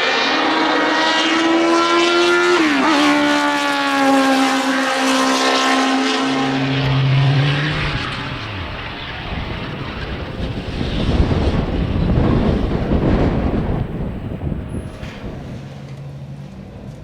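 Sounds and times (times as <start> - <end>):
racing car engine revving: 0.0 - 15.6
lower engine note: 0.0 - 17.0
gear change: 5.8 - 16.1.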